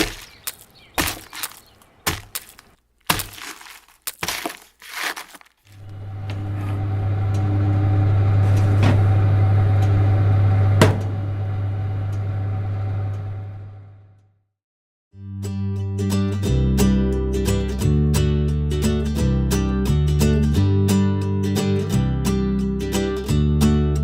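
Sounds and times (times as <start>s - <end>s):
crunching breaking impacts: 0.0s - 5.8s
low electrical hum: 5.7s - 14.1s.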